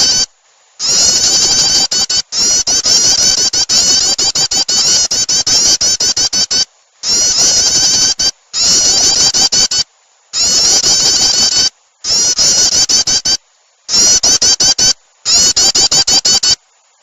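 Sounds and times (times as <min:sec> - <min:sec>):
bird chattering call: 0:00.0 - 0:16.6.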